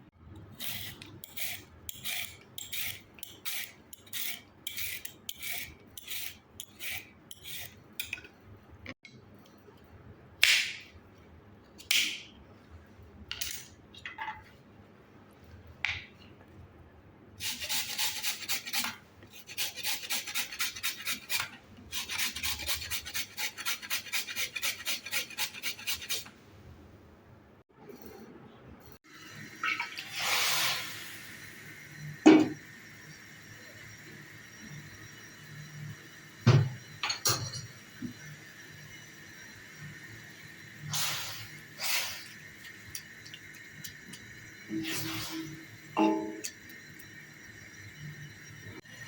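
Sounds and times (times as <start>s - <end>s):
carrots rasping on grater: 0.6s - 7.8s, 17.4s - 26.3s.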